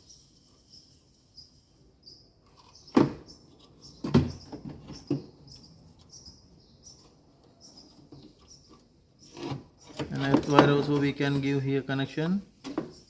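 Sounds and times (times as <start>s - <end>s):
wire connectors clicking and knocking: 10.0s - 11.4s.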